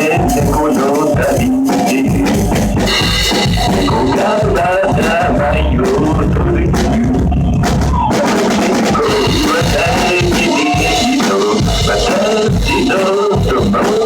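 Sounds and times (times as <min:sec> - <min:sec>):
rock backing track: 0:00.0 - 0:14.0
rock drum kit: 0:00.0 - 0:14.0.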